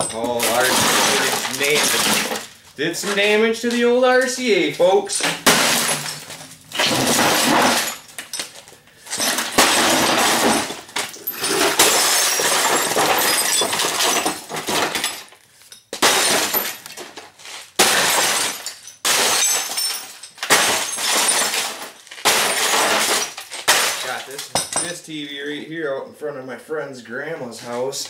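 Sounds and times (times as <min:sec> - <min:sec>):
glass shards tinkling: 0:00.0 - 0:02.5, 0:05.1 - 0:16.9, 0:17.9 - 0:25.0
glass smashing and crunching: 0:00.0 - 0:25.0.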